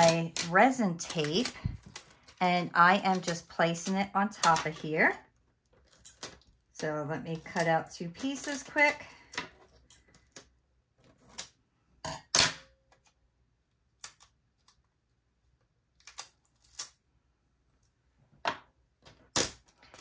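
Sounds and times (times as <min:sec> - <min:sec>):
scissors snipping tape: 0:00.0 - 0:02.0.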